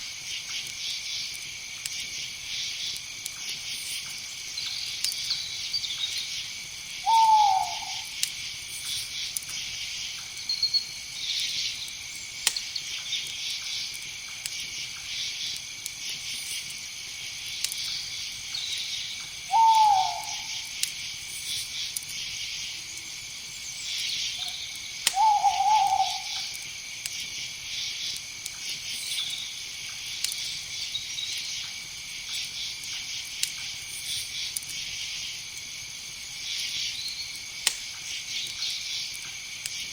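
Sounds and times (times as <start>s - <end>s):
crickets chirping: 0.0s - 39.9s
owl hooting: 7.0s - 8.1s, 19.5s - 20.7s, 24.4s - 26.5s.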